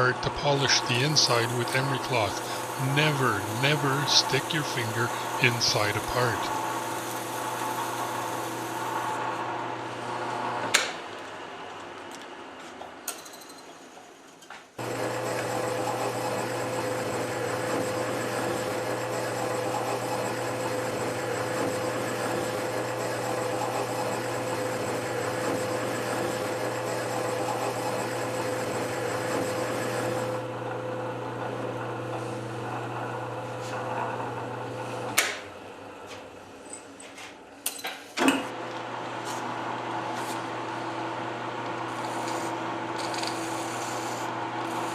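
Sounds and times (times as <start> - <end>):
lathe motor running: 0.0 - 10.7, 14.8 - 36.0, 38.5 - 44.9.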